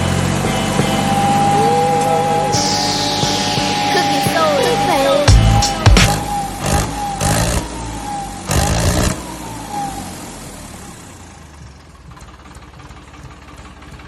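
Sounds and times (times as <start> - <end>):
diesel tractor engine revving: 0.0 - 2.9, 4.8 - 11.6.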